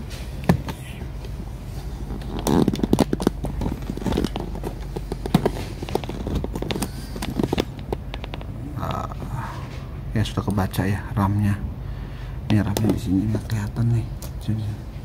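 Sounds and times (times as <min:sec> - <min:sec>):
laptop clicks and knocks: 0:02.6 - 0:08.5.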